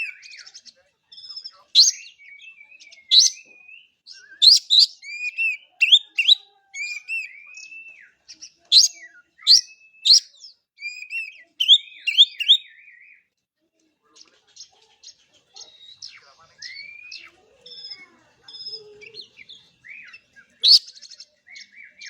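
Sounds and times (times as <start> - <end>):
bird singing whistles: 1.8 - 8.1, 8.8 - 13.2, 19.9 - 20.9.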